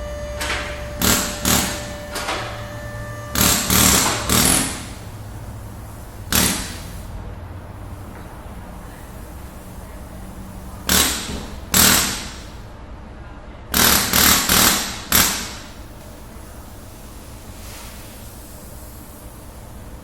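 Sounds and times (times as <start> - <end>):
sharp loud bangs: 6.3 - 6.9.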